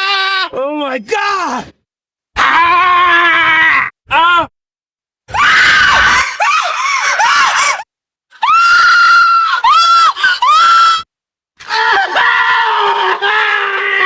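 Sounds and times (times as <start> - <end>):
high-pitched human screams: 2.4 - 4.5, 5.3 - 7.8, 8.4 - 14.0.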